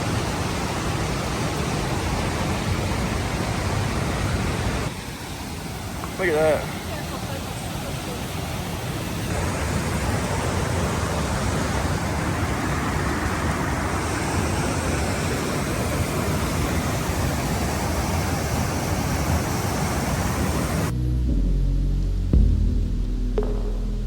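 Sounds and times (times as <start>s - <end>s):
waterfall roaring: 0.0s - 20.9s
music: 20.9s - 24.0s.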